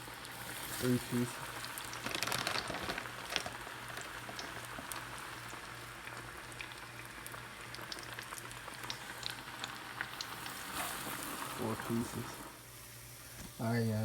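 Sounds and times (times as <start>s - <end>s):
fish deep-frying sizzle: 0.0s - 14.0s
oil pops and crackles: 0.8s - 11.3s.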